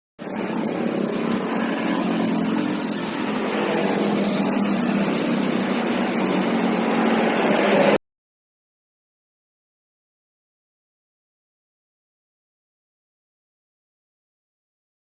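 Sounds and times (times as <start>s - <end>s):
air-conditioning compressor running: 0.2s - 7.9s.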